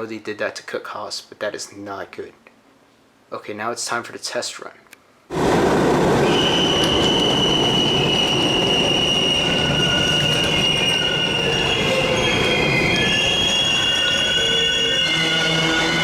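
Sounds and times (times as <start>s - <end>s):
train rumbling on rails: 5.3s - 16.0s
high wheel squeal: 6.2s - 16.0s.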